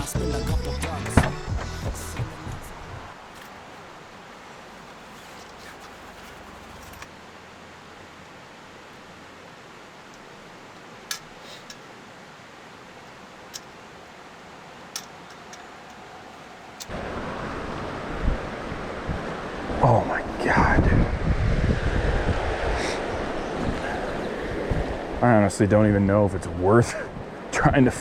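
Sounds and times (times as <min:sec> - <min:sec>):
steady hiss: 0:00.0 - 0:28.0
faint sharp clicks: 0:16.8 - 0:17.0.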